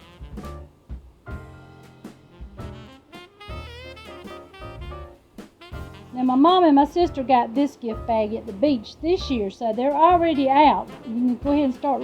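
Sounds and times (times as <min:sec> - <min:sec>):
saxophone melody: 0:00.0 - 0:07.4, 0:10.1 - 0:12.0
bass and drums: 0:00.0 - 0:12.0.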